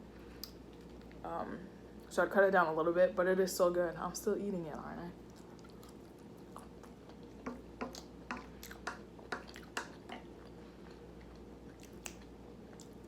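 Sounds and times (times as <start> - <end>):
chewing food: 5.2 - 13.0.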